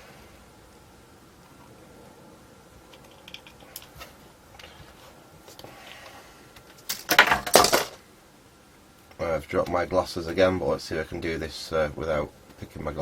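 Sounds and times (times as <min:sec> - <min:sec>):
faint clicks of small parts: 0:02.9 - 0:08.0.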